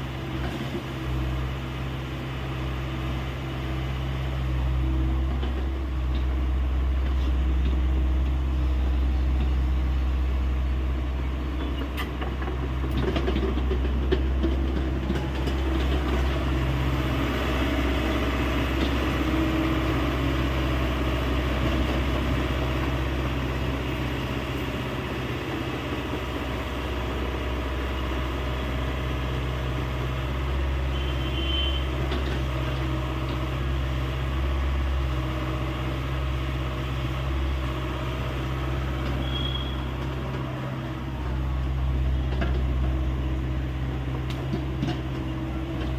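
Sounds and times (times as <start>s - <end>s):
excavator diesel engine running: 0.0s - 45.9s.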